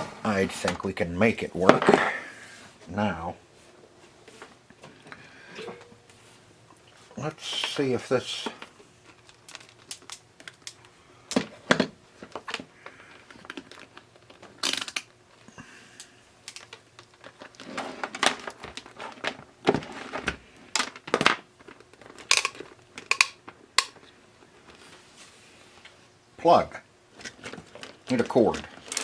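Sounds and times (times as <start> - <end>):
small parts clicking and tapping: 8.5 - 15.1, 16.0 - 17.6, 20.1 - 24.0, 27.2 - 29.0.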